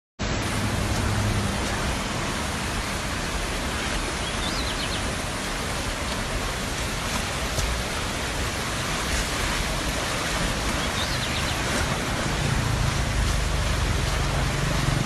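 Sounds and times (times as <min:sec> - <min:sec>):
heavy rain rushing: 0:00.2 - 0:15.0.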